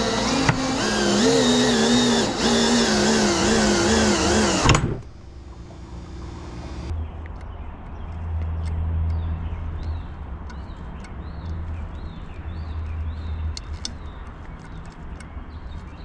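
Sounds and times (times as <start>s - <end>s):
electric drill motor whining: 0.0s - 6.9s.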